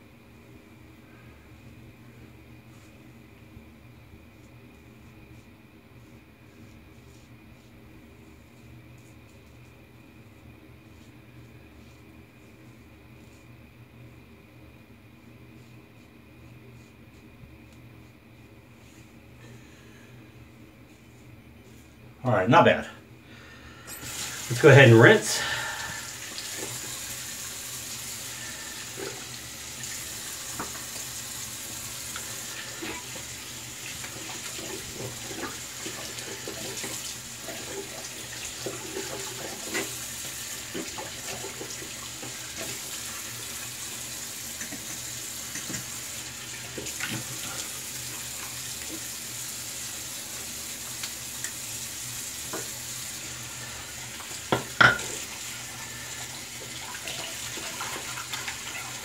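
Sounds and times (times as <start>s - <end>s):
tap running into a sink: 29.0s - 31.1s, 38.6s - 43.0s, 44.6s - 46.0s, 46.7s - 47.6s, 52.4s - 52.8s, 54.2s - 55.3s.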